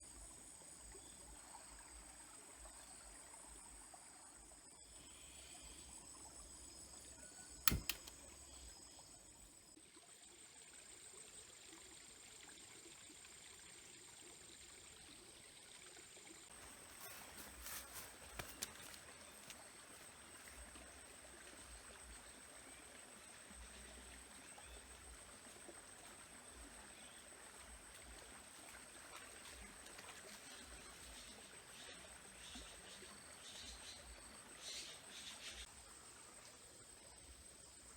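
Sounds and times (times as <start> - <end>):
soft stream-like hiss: 0.0 - 37.9
light clicks: 7.6 - 8.4.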